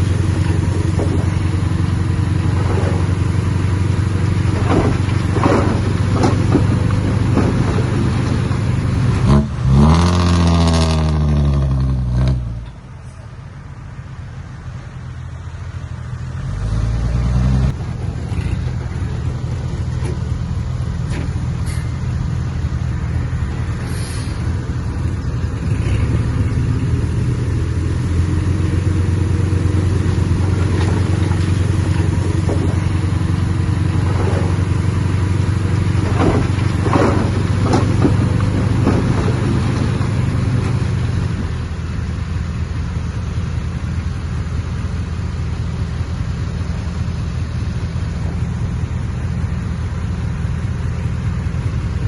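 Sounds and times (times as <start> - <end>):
clattering and scraping: 0.0 - 9.5, 29.8 - 41.5
diesel engine running under load: 0.0 - 52.0.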